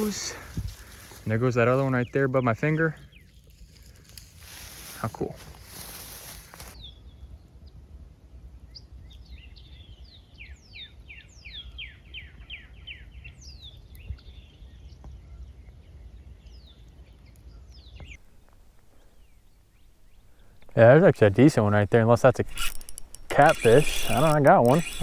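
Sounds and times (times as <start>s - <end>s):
steady low rumble: 0.0s - 11.7s
songbird singing: 0.0s - 25.0s.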